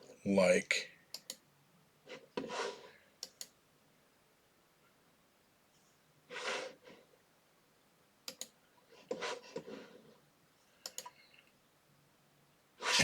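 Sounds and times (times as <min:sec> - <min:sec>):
computer mouse clicks: 0:01.1 - 0:01.4, 0:03.2 - 0:03.6, 0:08.2 - 0:09.2, 0:10.8 - 0:11.2
soft breaths: 0:02.0 - 0:03.2, 0:05.7 - 0:07.2, 0:08.6 - 0:11.6.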